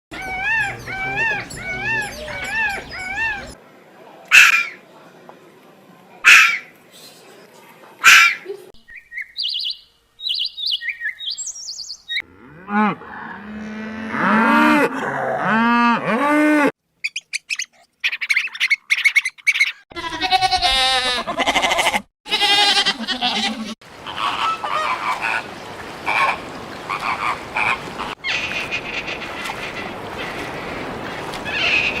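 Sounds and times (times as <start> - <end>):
animal calls: 0.1 - 3.6.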